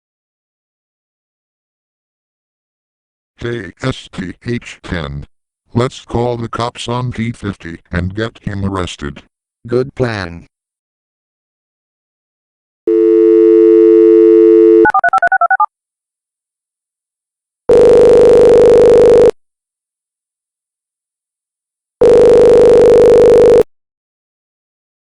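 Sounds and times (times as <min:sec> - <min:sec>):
telephone dial tone: 0:12.9 - 0:15.7, 0:17.7 - 0:19.4, 0:22.0 - 0:23.7
telephone line ringing: 0:12.9 - 0:15.7, 0:17.7 - 0:19.4, 0:22.0 - 0:23.6
touch-tone dialing beeps: 0:12.9 - 0:15.7, 0:22.0 - 0:23.6.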